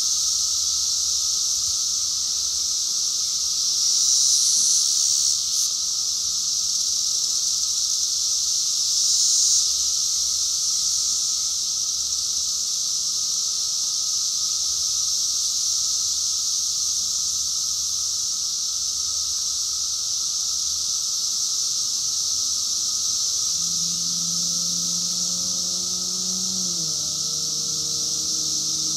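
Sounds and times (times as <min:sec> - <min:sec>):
cicadas droning: 0:00.0 - 0:28.9
low hum: 0:23.3 - 0:28.9.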